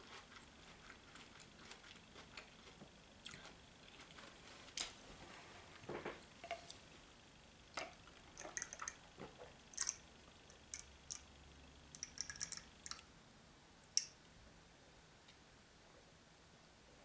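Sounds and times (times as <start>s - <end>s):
chewing food: 0.0s - 4.8s.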